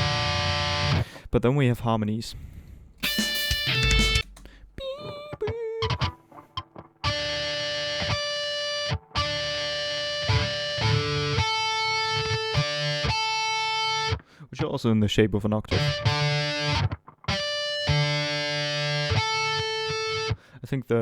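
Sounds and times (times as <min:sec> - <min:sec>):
distorted electric guitar lead: 0:03.0 - 0:06.2, 0:07.1 - 0:14.0, 0:15.8 - 0:20.2.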